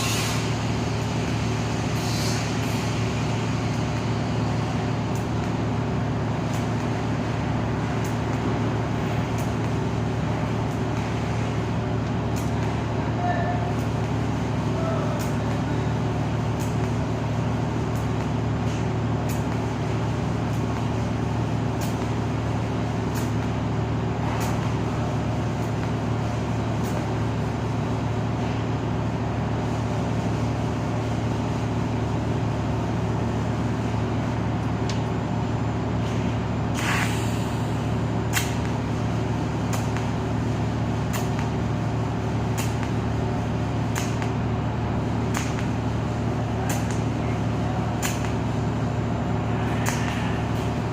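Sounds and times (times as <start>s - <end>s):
welding rig electrical hum: 0.0s - 50.9s
short hiss: 36.7s - 37.7s.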